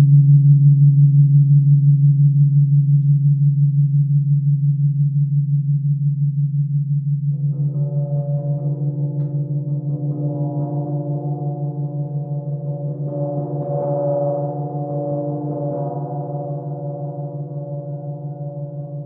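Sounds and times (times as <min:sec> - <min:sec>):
crystal singing bowls ringing: 0:07.6 - 0:19.0.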